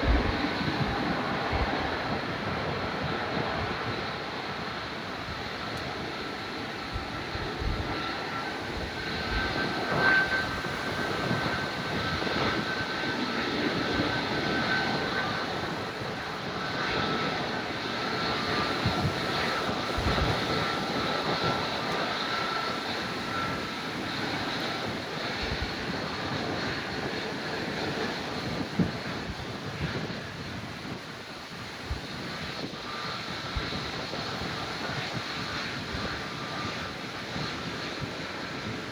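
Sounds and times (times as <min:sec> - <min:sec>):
wind thumps on microphone: 0:00.0 - 0:01.9
high engine whine: 0:00.0 - 0:38.4
jet engines roaring: 0:00.0 - 0:38.9.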